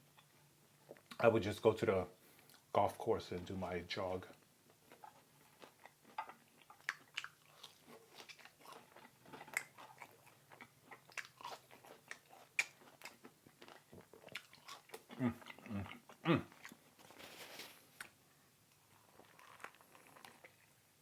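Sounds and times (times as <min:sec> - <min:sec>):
person chewing food: 0:04.3 - 0:20.8.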